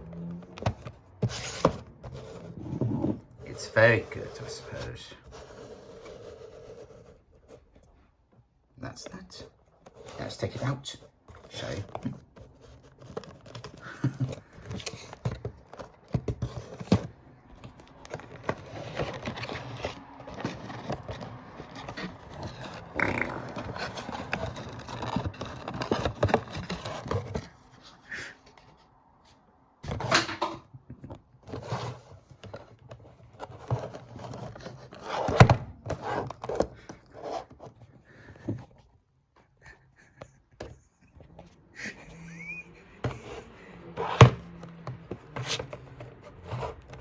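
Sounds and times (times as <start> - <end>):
cardboard and plastic rustling: 0.0 - 47.0.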